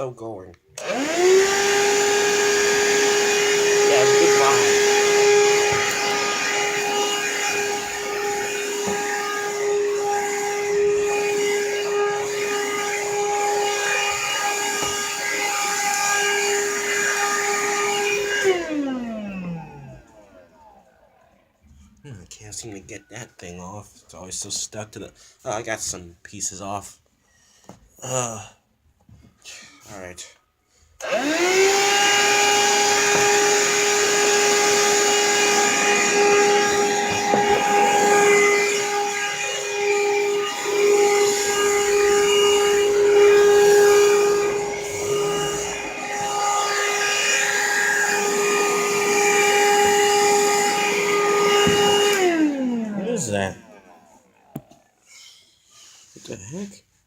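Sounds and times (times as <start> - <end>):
vacuum cleaner running: 0.8 - 21.4, 31.0 - 54.7.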